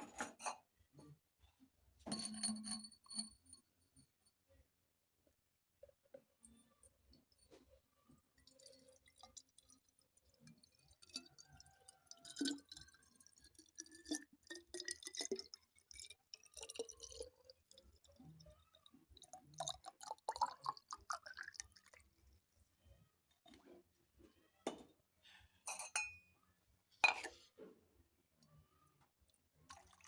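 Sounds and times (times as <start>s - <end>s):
glass clinking: 2.0s - 3.6s, 25.7s - 26.3s, 27.0s - 27.4s
water dripping and trickling: 8.3s - 22.1s.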